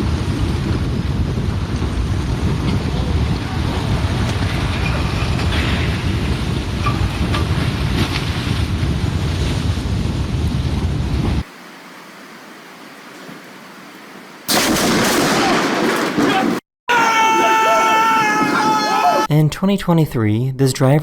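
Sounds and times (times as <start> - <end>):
wind rumbling on microphone: 0.0 - 11.5.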